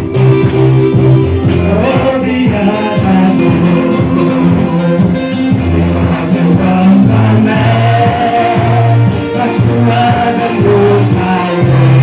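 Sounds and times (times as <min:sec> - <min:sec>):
band playing: 0:00.0 - 0:12.0
group singing gospel: 0:01.1 - 0:12.0.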